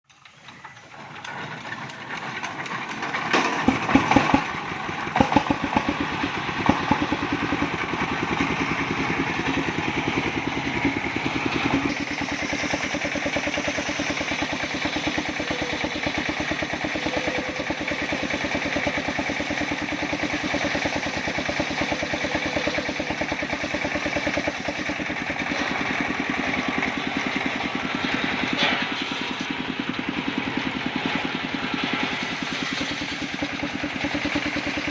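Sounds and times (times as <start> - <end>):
saw engine running: 0.2 - 34.9.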